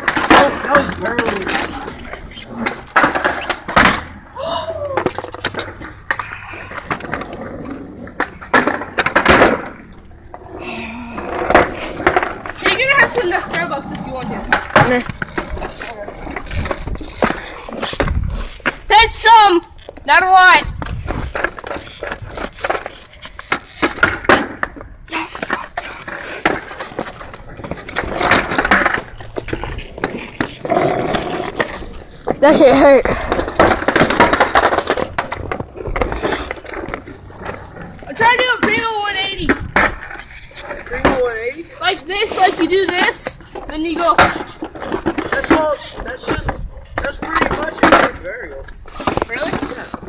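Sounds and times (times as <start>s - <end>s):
skateboard clacks and knocks: 0.0s - 50.0s
skateboard wheels rolling: 0.0s - 50.0s.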